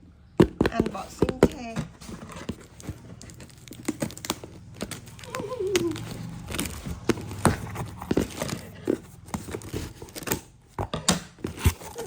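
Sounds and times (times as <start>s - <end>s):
plastic crinkling and tearing: 2.0s - 10.7s, 11.4s - 12.0s.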